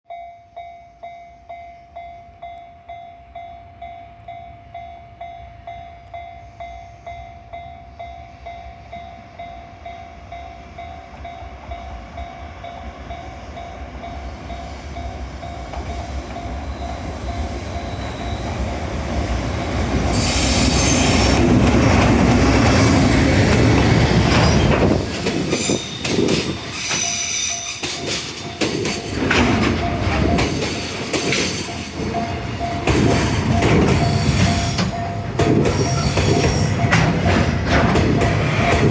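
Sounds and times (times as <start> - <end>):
electric locomotive approaching: 0.5 - 38.9
train wheels clattering over rail joints: 19.4 - 38.9
level-crossing alarm bell ringing: 24.3 - 37.2.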